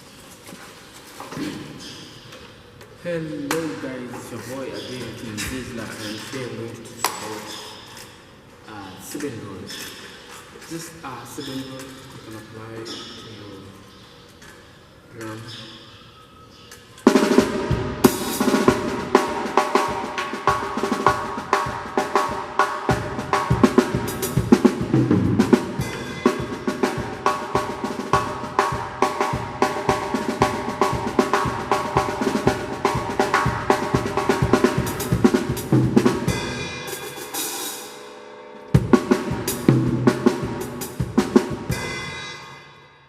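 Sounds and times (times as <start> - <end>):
drum kit playing fast groove: 17.1 - 42.6
cymbal ringing: 17.4 - 39.7.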